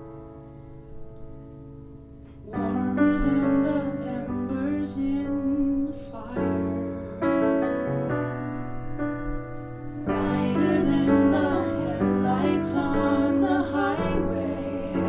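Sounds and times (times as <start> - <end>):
soft piano chords: 0.0 - 15.0
person singing: 10.0 - 15.0.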